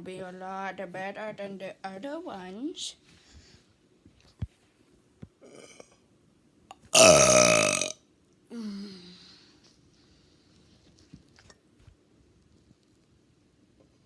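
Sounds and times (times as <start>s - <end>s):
person burping: 5.4s - 6.0s, 6.7s - 8.0s.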